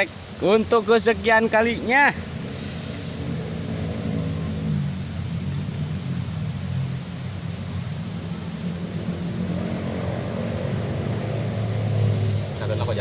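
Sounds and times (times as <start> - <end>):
engine humming: 0.0 - 13.0.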